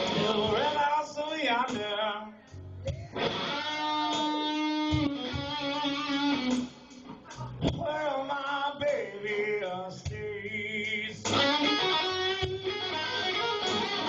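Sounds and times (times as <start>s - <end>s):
electric guitar lead with bends: 0.0s - 0.9s, 3.0s - 7.7s, 11.3s - 14.0s
band music: 0.0s - 14.0s.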